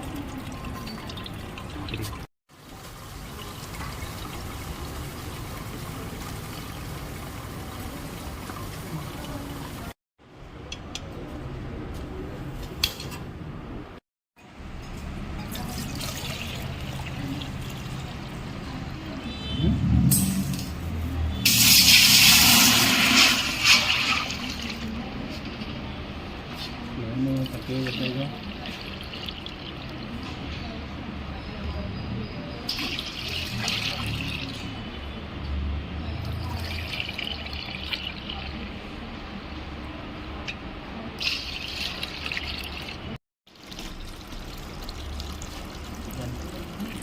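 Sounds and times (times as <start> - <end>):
liquid pouring and trickling: 0.0 - 10.0, 15.5 - 18.8, 27.0 - 30.4, 32.7 - 34.8, 36.2 - 38.8, 41.2 - 47.0.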